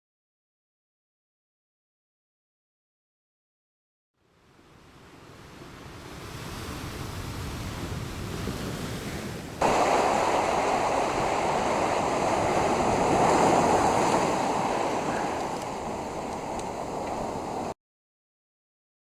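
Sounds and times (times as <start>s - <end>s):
ocean surf washing up beach: 4.3s - 17.8s.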